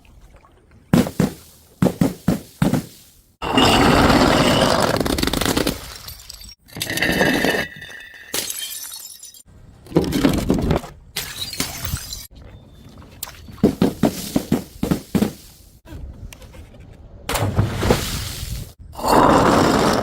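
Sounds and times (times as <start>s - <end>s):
glass bottles smashing: 3.4s - 9.5s.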